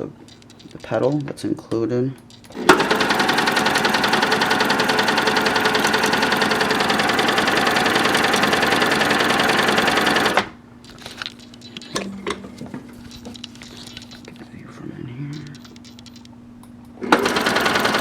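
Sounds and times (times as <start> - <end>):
light clicks: 0.0 - 1.4, 2.2 - 2.8, 10.8 - 12.0, 13.0 - 14.5, 15.3 - 16.8
sewing machine clattering: 2.2 - 12.0, 17.0 - 18.0.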